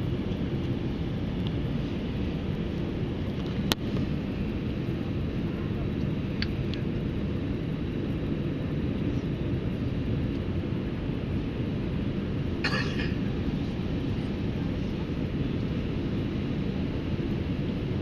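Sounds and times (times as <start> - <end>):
airplane cabin drone: 0.0 - 18.0
person coughing: 12.6 - 13.3.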